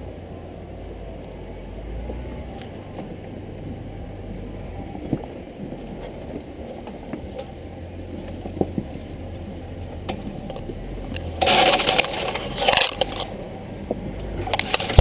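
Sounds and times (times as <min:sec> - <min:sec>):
vehicle engine running low: 0:00.0 - 0:15.0
loud grinding crunch: 0:10.6 - 0:13.5, 0:14.2 - 0:15.0.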